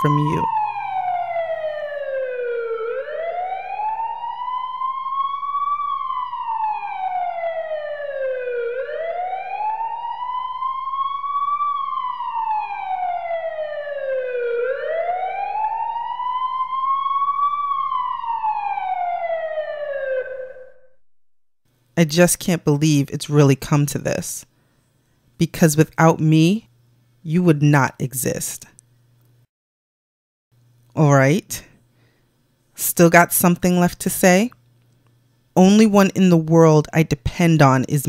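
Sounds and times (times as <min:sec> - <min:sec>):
emergency siren wailing: 0:00.0 - 0:21.0.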